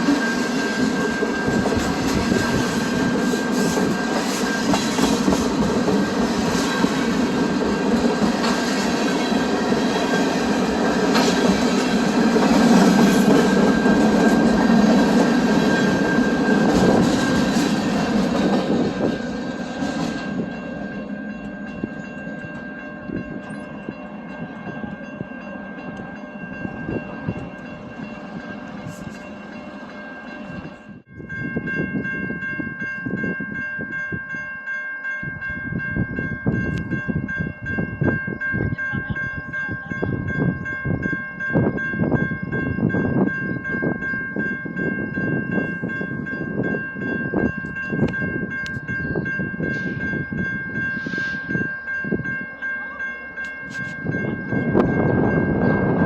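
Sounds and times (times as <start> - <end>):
train wheels clattering: 0.0 - 30.6.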